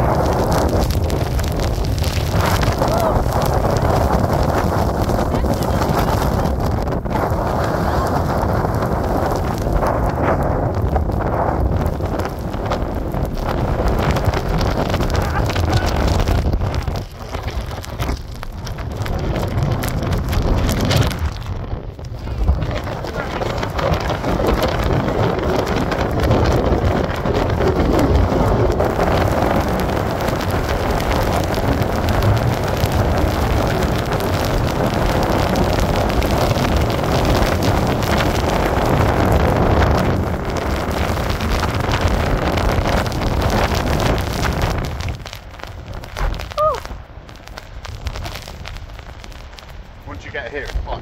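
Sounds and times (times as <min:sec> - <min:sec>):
wind buffeting microphone: 0:00.0 - 0:51.0.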